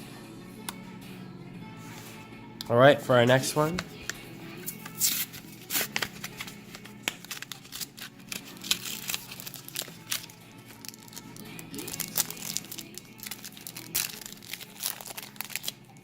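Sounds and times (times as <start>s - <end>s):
soft background music: 0.0s - 16.0s
foil wrapper tearing and crinkling: 4.7s - 16.0s.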